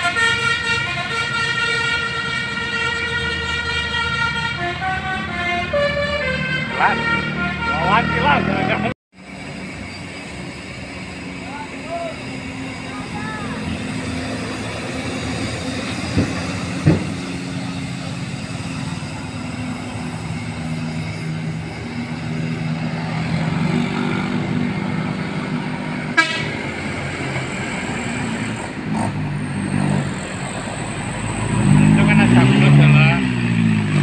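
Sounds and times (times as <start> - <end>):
multi-tone air horn chords: 0.0 - 8.9, 26.1 - 26.7.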